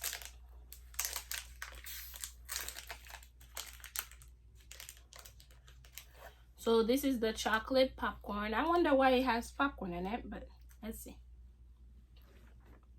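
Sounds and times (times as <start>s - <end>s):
snack wrapper crinkling: 0.0s - 6.1s.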